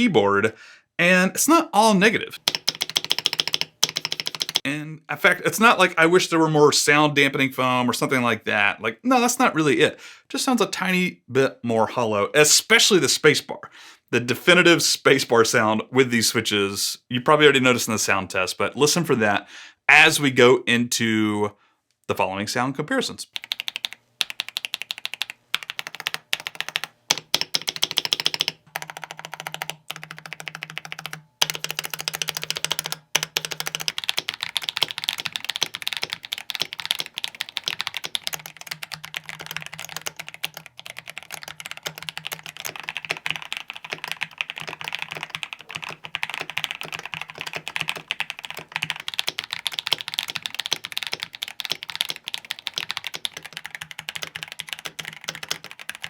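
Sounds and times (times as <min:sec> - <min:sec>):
mechanical keyboard typing: 0:02.4 - 0:04.7, 0:23.3 - 0:56.0.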